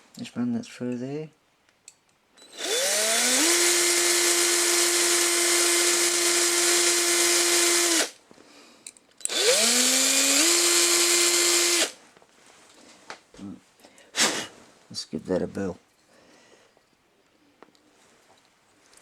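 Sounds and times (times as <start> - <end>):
electric drill whining: 2.4 - 8.2, 9.3 - 12.0.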